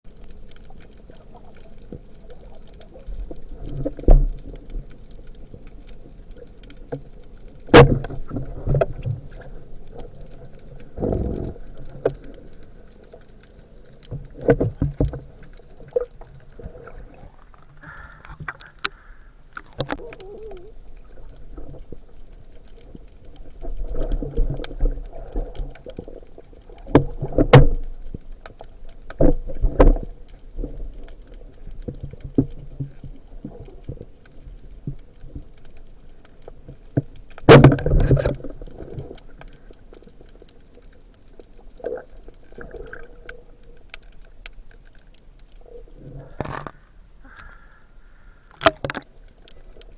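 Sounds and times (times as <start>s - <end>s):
faint water sounds: 0.1s - 49.9s.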